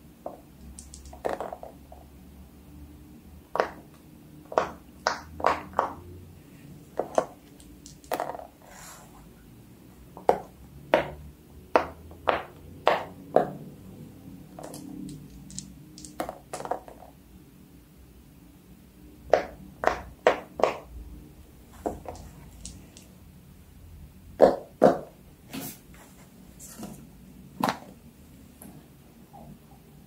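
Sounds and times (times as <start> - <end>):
fidget toys popping and clicking: 0.6 - 1.7, 7.0 - 8.4, 14.6 - 17.0, 21.9 - 23.1.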